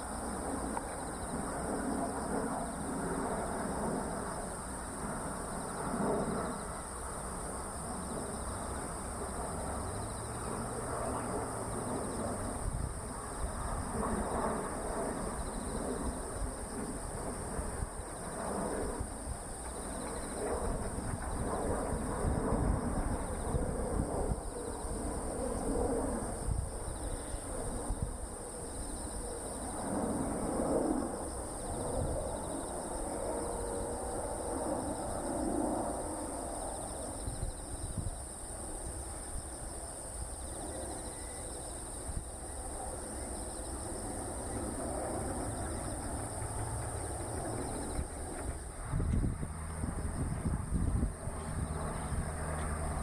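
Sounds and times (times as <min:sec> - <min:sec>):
high-pitched insect drone: 0:00.0 - 0:53.0
low uneven rumble: 0:44.4 - 0:53.0.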